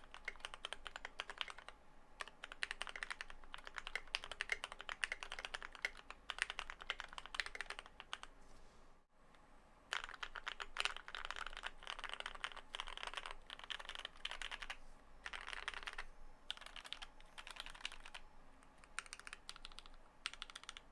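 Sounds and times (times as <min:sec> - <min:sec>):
mechanical keyboard typing: 0:00.0 - 0:08.3, 0:09.9 - 0:18.2, 0:18.8 - 0:20.9.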